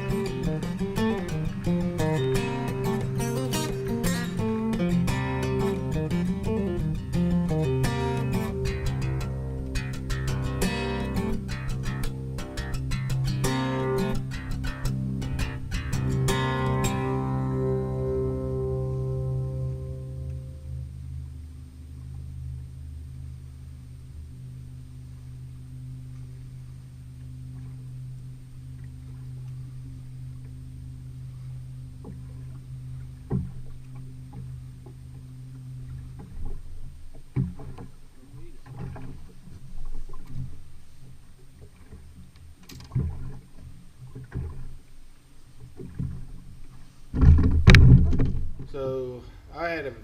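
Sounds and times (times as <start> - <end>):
boat motor humming: 0.0 - 50.0
water noise: 0.0 - 50.0
short knocks or splashes: 47.1 - 48.7.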